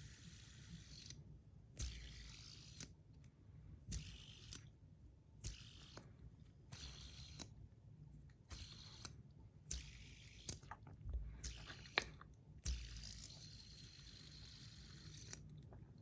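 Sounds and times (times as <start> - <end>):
fidget spinner clicking and whirring: 1.8 - 3.0, 3.9 - 4.7, 5.4 - 6.1, 6.7 - 7.6, 11.6 - 15.4.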